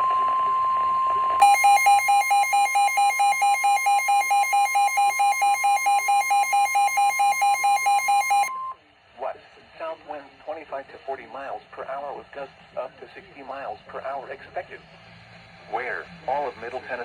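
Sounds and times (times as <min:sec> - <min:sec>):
rapid alarm beeping: 0:00.0 - 0:08.7
steady alarm tone: 0:00.0 - 0:08.7.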